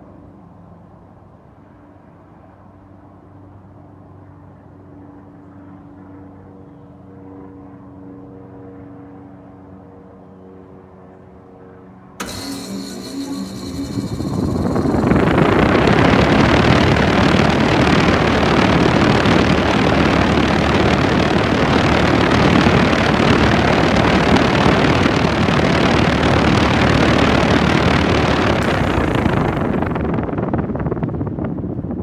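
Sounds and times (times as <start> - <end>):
heat pump fan rushing air: 12.2 - 32.0.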